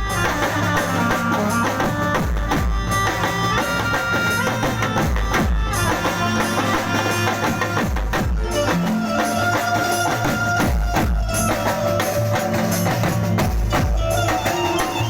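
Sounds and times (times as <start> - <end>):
held melody notes: 0.0 - 15.0
percussion beat: 0.0 - 15.0
low bass thumps: 1.8 - 3.6, 4.2 - 6.1, 7.8 - 8.6, 12.9 - 14.5.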